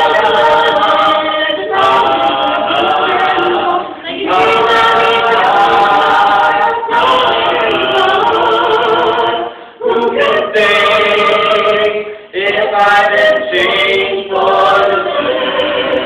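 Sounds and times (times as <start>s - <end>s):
choir singing a cappella: 0.0s - 16.0s.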